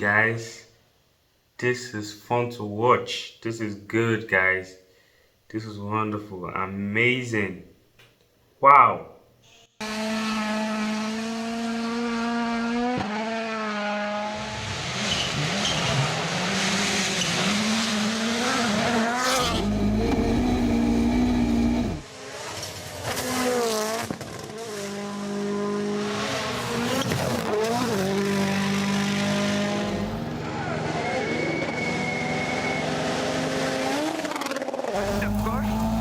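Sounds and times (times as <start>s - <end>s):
rally car engines revving: 9.8s - 36.0s
heavy engine rumble: 19.5s - 22.0s, 35.0s - 36.0s.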